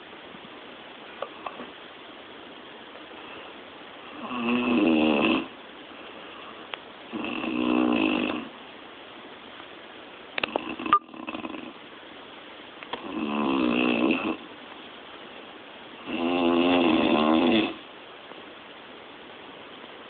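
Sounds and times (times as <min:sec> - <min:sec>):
woman snoring loudly: 0:04.1 - 0:05.5, 0:07.1 - 0:08.5, 0:10.6 - 0:11.8, 0:13.0 - 0:14.4, 0:16.0 - 0:17.8.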